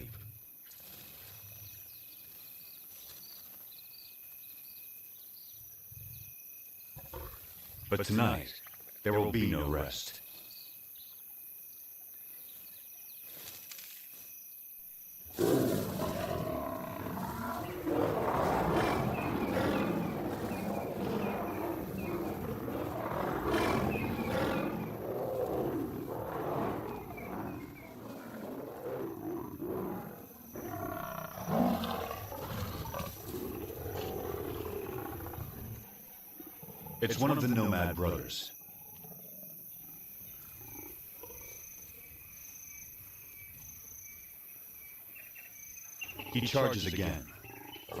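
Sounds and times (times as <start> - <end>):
faint insects chirring: 0.0 - 48.0
lions roaring: 15.3 - 35.8, 46.9 - 48.0.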